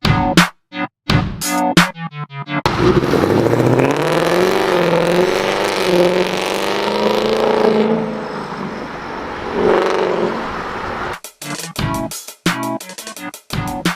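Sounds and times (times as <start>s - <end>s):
electronic music with hard beat: 0.0s - 2.8s, 11.1s - 13.9s
car engine revving: 2.7s - 11.2s.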